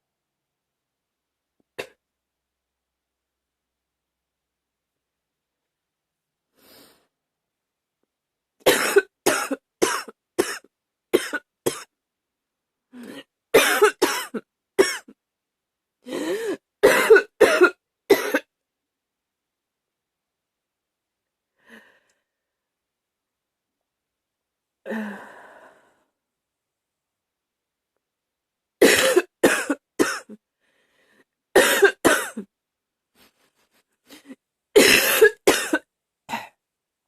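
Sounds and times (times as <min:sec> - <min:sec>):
woman coughing hard: 0:08.7 - 0:10.6, 0:11.2 - 0:11.9, 0:13.6 - 0:15.1, 0:16.4 - 0:18.5, 0:28.8 - 0:30.4, 0:31.6 - 0:32.5, 0:34.8 - 0:36.6.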